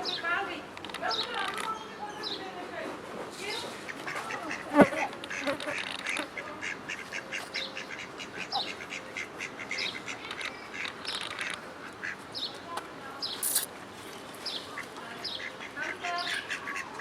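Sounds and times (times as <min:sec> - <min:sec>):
ducks quacking: 0:03.8 - 0:12.3, 0:14.7 - 0:17.0
high bird chirps: 0:13.3 - 0:13.7.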